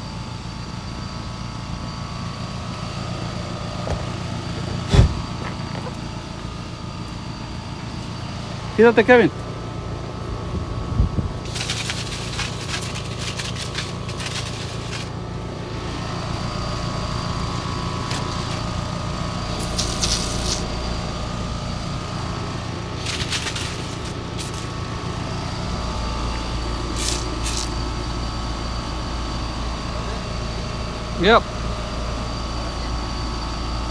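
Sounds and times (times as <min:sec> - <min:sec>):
short bursts of hissing: 0:19.5 - 0:20.7, 0:26.9 - 0:27.8.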